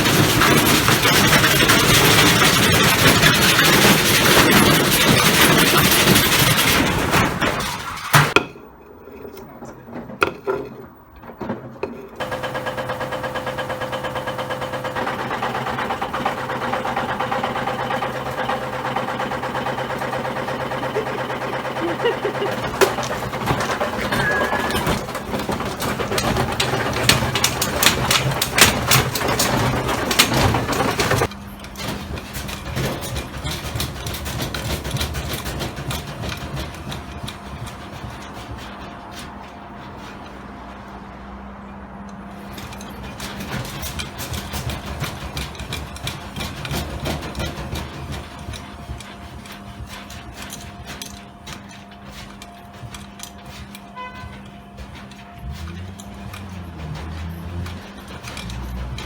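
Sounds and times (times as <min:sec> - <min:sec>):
washing machine motor hum: 0:00.0 - 0:08.4, 0:12.1 - 0:59.0
objects clattering in washing machine: 0:00.0 - 0:59.0
irregular knocks and bangs: 0:09.8 - 0:40.2.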